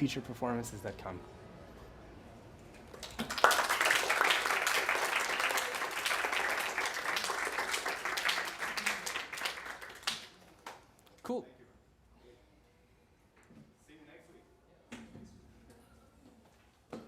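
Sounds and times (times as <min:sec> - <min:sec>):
audience applauding: 0:03.0 - 0:10.8.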